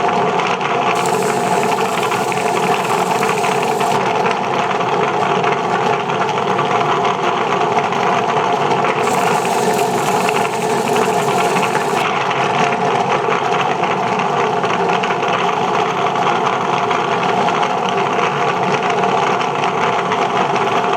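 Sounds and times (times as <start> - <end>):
bright hiss: 1.0 - 4.0
sanding machine motor humming: 1.0 - 4.0, 9.0 - 12.0.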